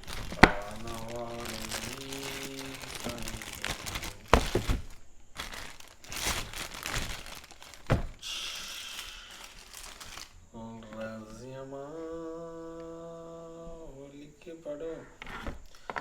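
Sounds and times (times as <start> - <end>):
plastic packaging crinkling: 0.0 - 10.4.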